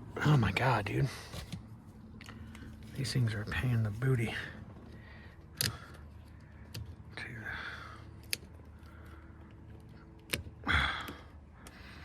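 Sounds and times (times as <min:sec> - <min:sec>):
sharp plastic clicks: 0:05.5 - 0:06.0.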